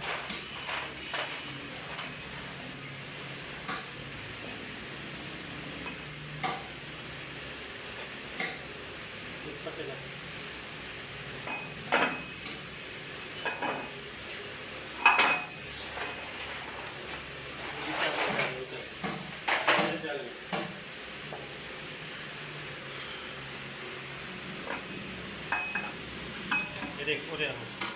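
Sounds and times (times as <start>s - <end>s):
metal tools clanking: 0.1s - 3.7s.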